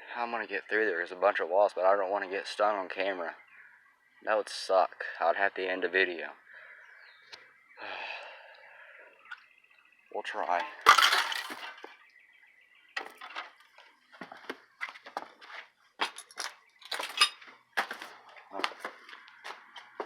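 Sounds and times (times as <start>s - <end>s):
debris crunching underfoot: 10.6s - 12.0s, 13.0s - 20.0s.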